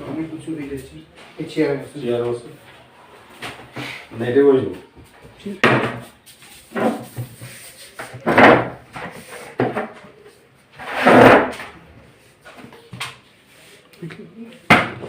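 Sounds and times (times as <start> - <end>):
chair scraping: 5.8 - 10.1, 10.7 - 11.8.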